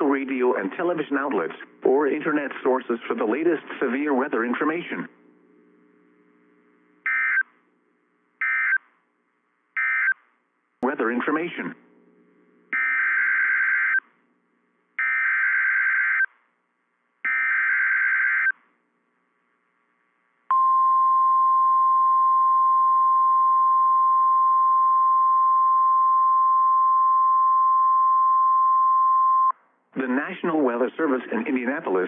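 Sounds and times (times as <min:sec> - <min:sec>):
steady warning alarm tone: 0:07.1 - 0:07.4, 0:08.4 - 0:08.8, 0:09.8 - 0:10.2, 0:12.8 - 0:14.0, 0:15.0 - 0:16.3, 0:17.3 - 0:18.6.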